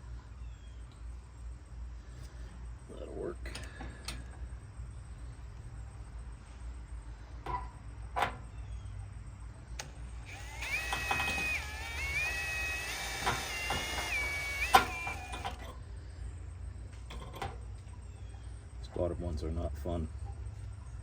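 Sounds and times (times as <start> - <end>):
electric drill boring steel: 10.2 - 15.7.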